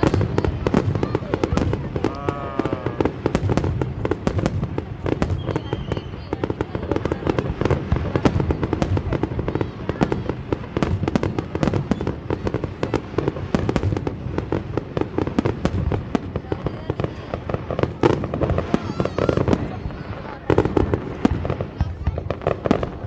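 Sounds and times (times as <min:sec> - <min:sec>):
fireworks bangs and crackles: 0:00.0 - 0:23.0.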